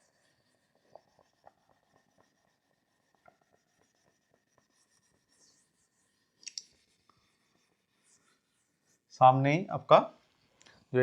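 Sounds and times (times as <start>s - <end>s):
pen writing ticks and scratches: 0.0s - 8.4s.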